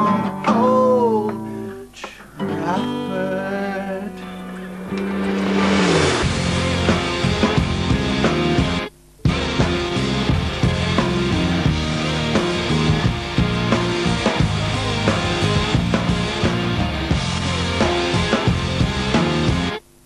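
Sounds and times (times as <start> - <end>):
rock music: 0.0 - 1.4, 2.5 - 19.8
drum kit beat: 4.8 - 19.8.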